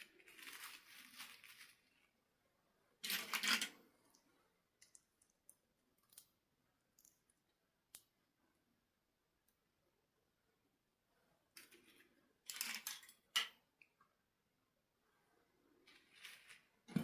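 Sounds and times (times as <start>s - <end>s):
packaging rustling: 0.0s - 2.1s.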